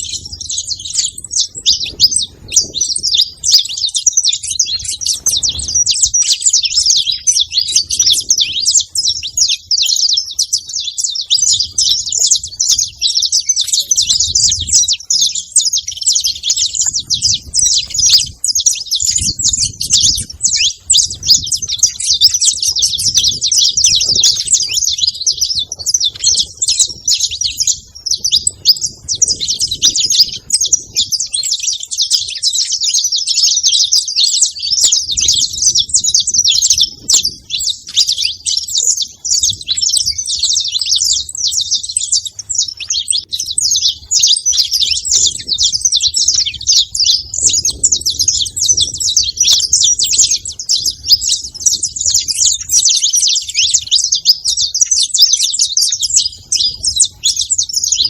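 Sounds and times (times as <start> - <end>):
finch chirping and singing: 0.0 - 58.0.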